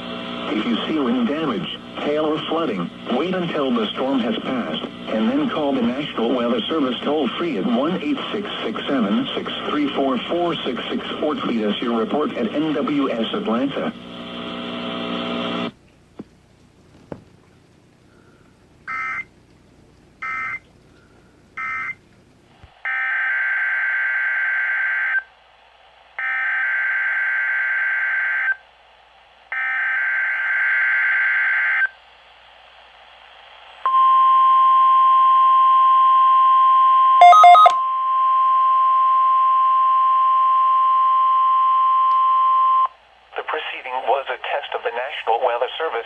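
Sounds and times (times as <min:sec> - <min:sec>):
steady warning alarm tone: 0:20.2 - 0:20.6, 0:21.6 - 0:22.0, 0:33.9 - 0:42.9.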